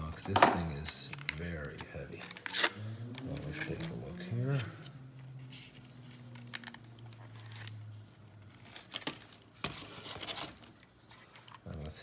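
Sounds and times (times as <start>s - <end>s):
packaging crinkling: 6.3s - 12.0s.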